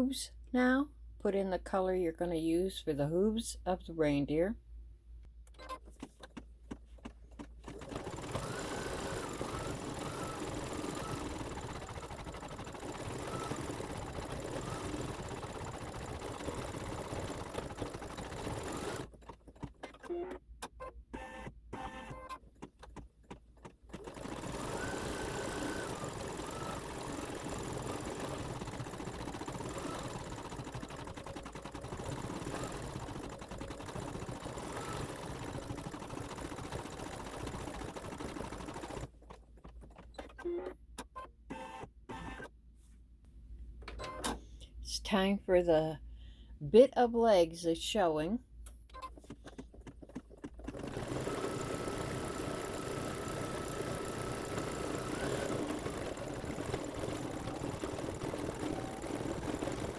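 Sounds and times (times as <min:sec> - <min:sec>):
embroidery machine needle rattling: 0:07.3 - 0:20.1, 0:22.0 - 0:40.4, 0:49.1 - 0:59.9.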